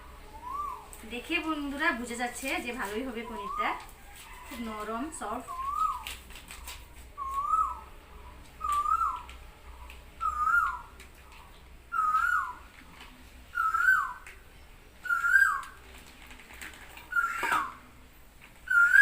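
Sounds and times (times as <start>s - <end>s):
bird whistling call: 0.3s - 0.9s, 3.2s - 3.9s, 5.4s - 6.1s, 7.2s - 9.3s, 10.2s - 10.9s, 11.9s - 12.7s, 13.5s - 14.2s, 15.0s - 15.8s, 17.1s - 17.8s, 18.6s - 19.0s.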